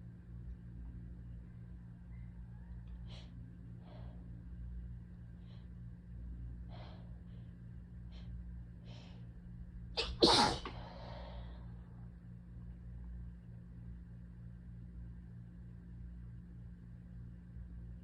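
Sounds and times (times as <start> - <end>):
person sneezing: 10.0 - 10.8
person breathing in: 10.7 - 11.8.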